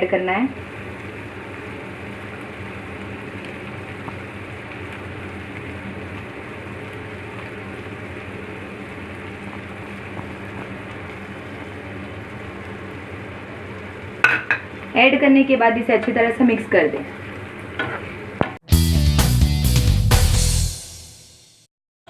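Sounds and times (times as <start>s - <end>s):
gravy bubbling in a pan: 0.5s - 15.2s.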